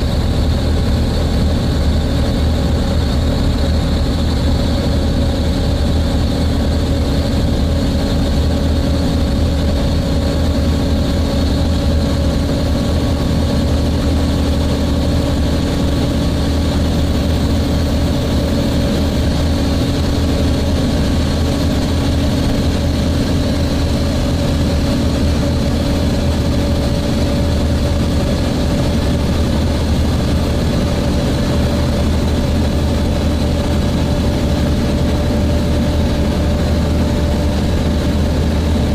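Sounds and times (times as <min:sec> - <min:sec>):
bus engine drone: 0:00.0 - 0:38.9
cooling fan whining: 0:00.0 - 0:38.9.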